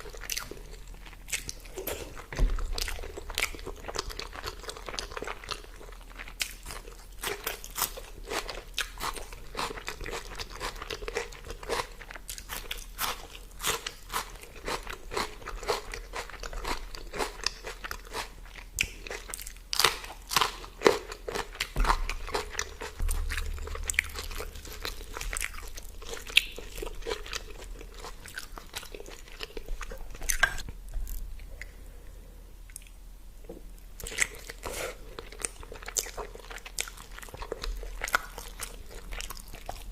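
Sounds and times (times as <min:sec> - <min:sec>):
person biting and chewing food: 0:12.3 - 0:31.7.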